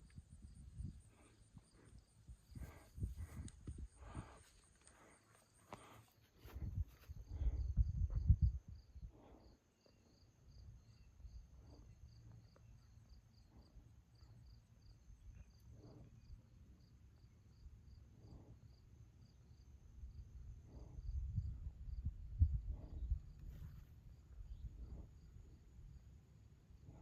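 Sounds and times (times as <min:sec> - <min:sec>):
microphone wind rumble: 0:00.0 - 0:04.5, 0:06.4 - 0:09.4, 0:20.7 - 0:25.6
insects chirping: 0:00.0 - 0:27.0.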